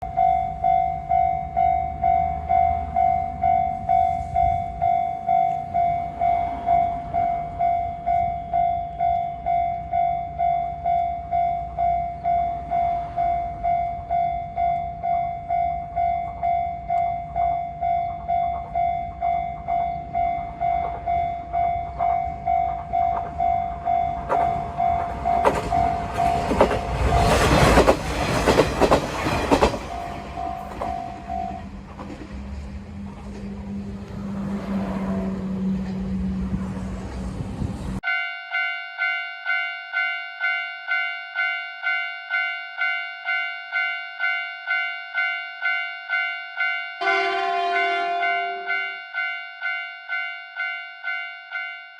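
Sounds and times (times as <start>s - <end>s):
railroad crossing bell ringing: 0.0s - 31.9s, 38.0s - 51.9s
diesel railcar rumbling past: 0.0s - 38.0s, 47.0s - 49.3s
train wheel clacks: 20.4s - 32.5s.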